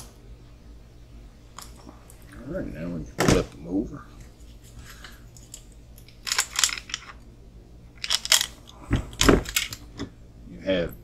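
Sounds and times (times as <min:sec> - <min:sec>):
small parts clicking and clattering: 0:04.7 - 0:07.2, 0:08.0 - 0:10.0.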